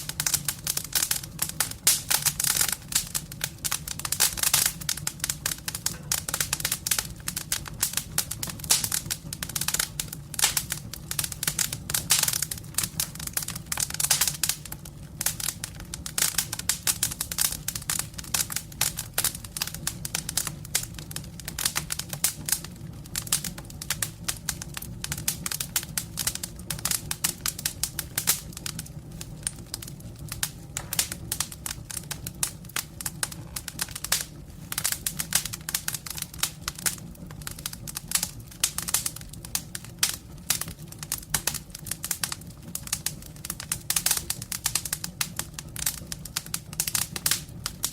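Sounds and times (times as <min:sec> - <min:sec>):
campfire wood crackling: 0:00.0 - 0:47.9
steady low hum: 0:16.0 - 0:41.0.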